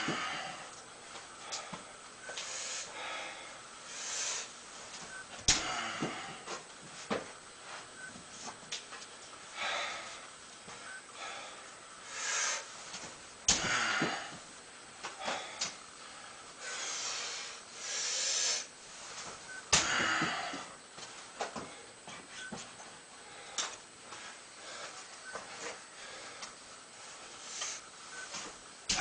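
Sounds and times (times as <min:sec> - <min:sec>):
person breathing hard: 0:00.0 - 0:00.8, 0:01.4 - 0:04.6, 0:05.5 - 0:06.6, 0:09.5 - 0:12.9, 0:13.5 - 0:14.5, 0:15.1 - 0:18.7, 0:19.7 - 0:20.8, 0:23.2 - 0:26.6.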